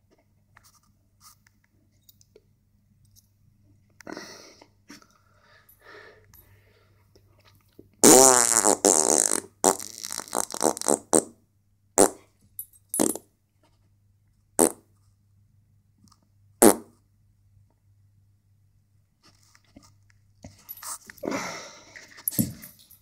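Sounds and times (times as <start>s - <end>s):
farting: 8.0s - 11.3s, 14.6s - 14.8s, 16.6s - 16.9s.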